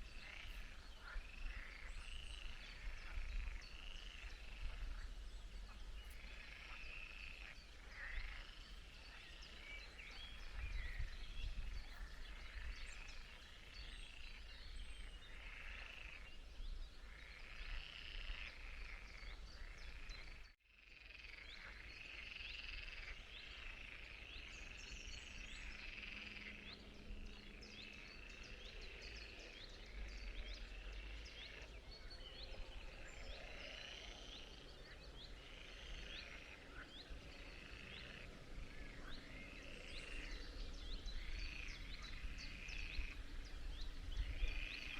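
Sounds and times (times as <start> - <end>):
chorus of frogs calling: 17.0 - 44.9.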